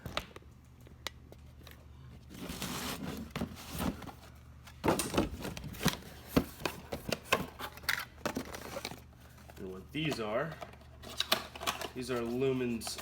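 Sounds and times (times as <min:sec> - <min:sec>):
cardboard box rustling and scraping: 0:02.3 - 0:07.7.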